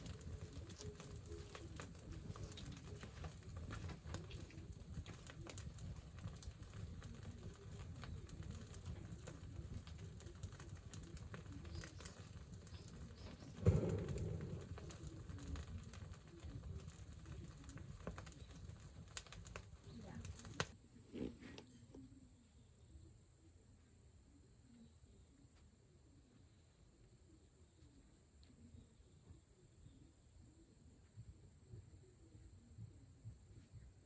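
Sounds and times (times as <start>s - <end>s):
thump: 13.6s - 14.8s
low rumble: 13.6s - 15.1s.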